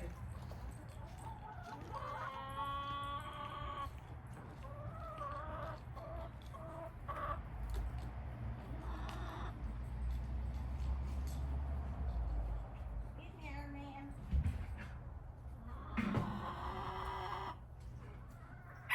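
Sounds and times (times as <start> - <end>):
hens clucking and calling: 0.0 - 9.7, 15.5 - 18.9.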